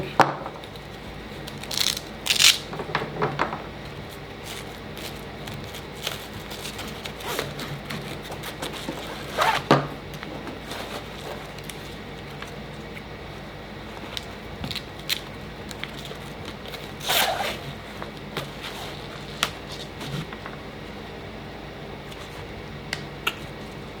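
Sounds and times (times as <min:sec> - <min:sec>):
webbing strap scraping: 0:01.5 - 0:02.7, 0:04.4 - 0:09.7, 0:16.8 - 0:17.9.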